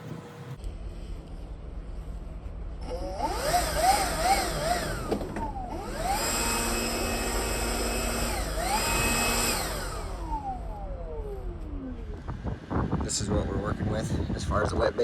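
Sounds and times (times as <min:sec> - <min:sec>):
motor running with wavering pitch: 0:02.8 - 0:13.0.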